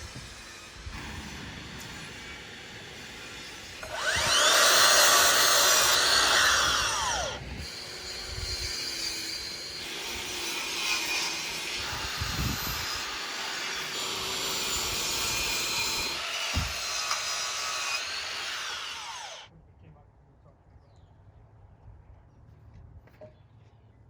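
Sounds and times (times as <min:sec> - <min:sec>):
electric saw cutting wood: 0:00.0 - 0:19.5
work noise: 0:00.0 - 0:19.5
dull knocks: 0:16.5 - 0:16.8.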